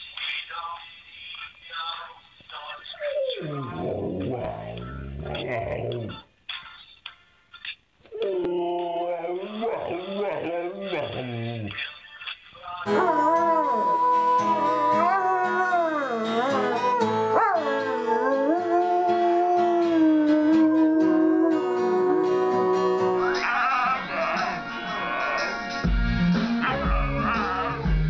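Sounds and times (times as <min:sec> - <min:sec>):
dog howling: 0:08.1 - 0:11.7, 0:12.9 - 0:24.4.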